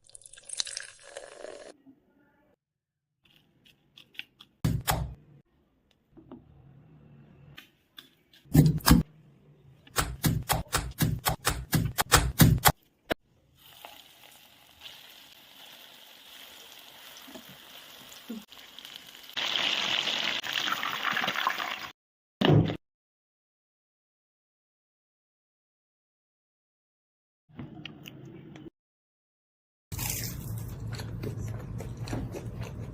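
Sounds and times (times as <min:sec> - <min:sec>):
chicken frying in hot oil: 0:13.6 - 0:21.9.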